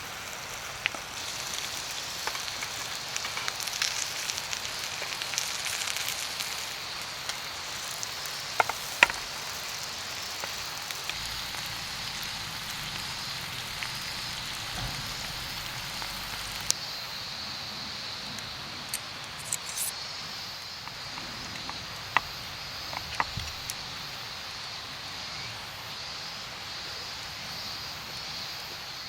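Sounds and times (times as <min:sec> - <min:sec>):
campfire crackling and popping: 0:00.0 - 0:16.8, 0:18.4 - 0:19.9, 0:20.8 - 0:24.2.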